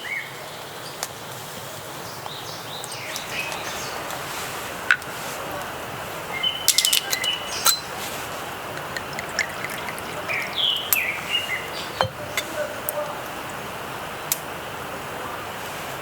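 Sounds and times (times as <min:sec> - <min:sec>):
steady outdoor hiss: 0:00.0 - 0:16.0
glass clinking: 0:06.7 - 0:13.7.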